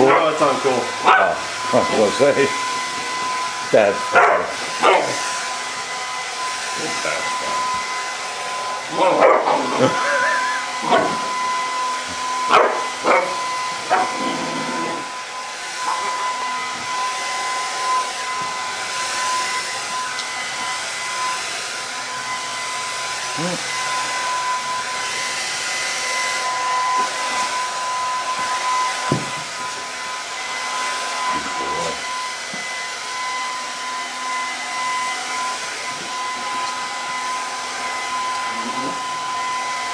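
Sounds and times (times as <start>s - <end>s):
hair dryer running: 0.0s - 39.9s
puppy barking: 1.0s - 1.5s, 4.1s - 5.2s, 8.9s - 11.2s, 12.5s - 14.2s.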